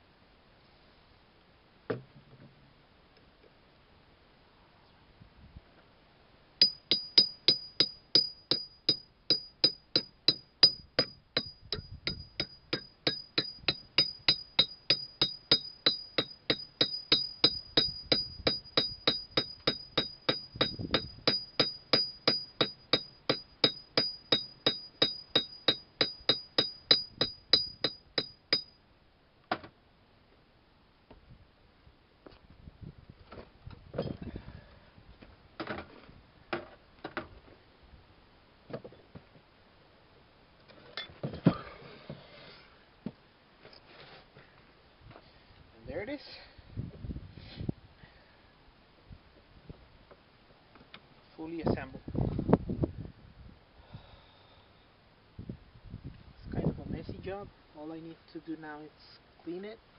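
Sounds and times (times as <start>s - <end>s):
hammer tapping metal: 6.6s - 28.7s.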